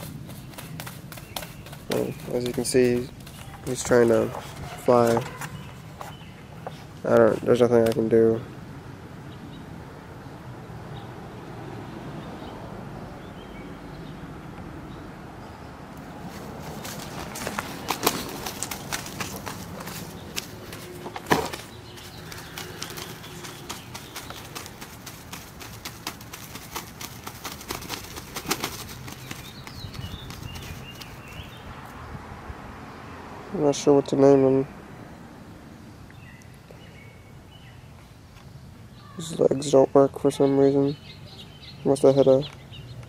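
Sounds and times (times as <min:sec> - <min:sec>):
bird flapping and scuffling: 0:00.0 - 0:06.9, 0:16.1 - 0:31.6.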